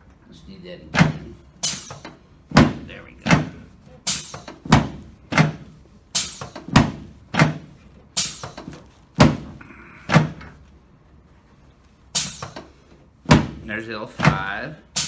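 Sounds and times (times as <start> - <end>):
sharp thuds on a table: 8.4 - 10.4, 13.3 - 13.6.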